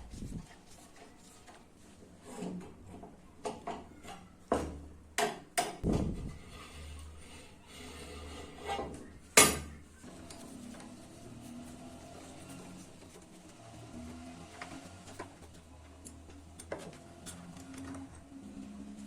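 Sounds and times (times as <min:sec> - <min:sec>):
dull heavy thud: 0:05.8 - 0:06.3.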